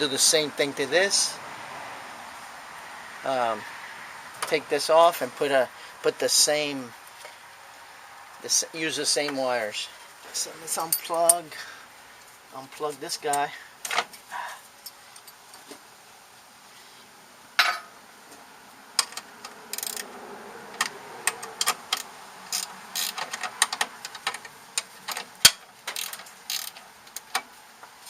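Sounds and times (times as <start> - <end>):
clicks and rattles of wire connectors: 20.8 - 27.5.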